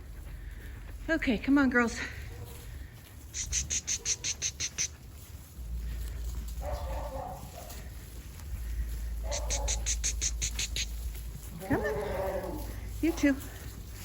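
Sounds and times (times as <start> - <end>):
sharp high clicks: 3.3 - 5.0, 9.3 - 11.0
sheep bleating: 9.3 - 12.9.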